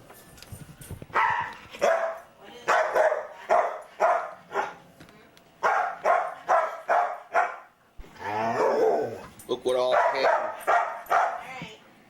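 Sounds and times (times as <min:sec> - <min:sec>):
dog barking: 0:01.2 - 0:04.8, 0:05.6 - 0:07.8, 0:09.8 - 0:11.5.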